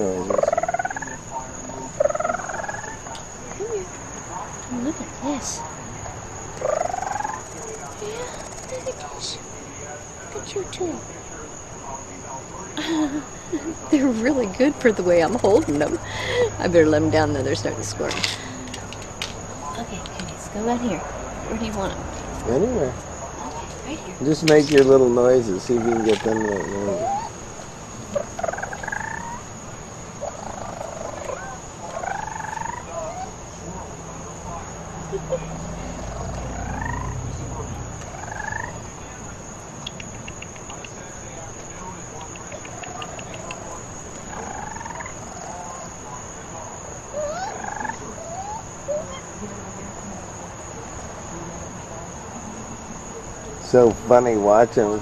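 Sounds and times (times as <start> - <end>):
baby raccoons trilling: 0.0 - 55.0
high-pitched background drone: 24.2 - 27.4.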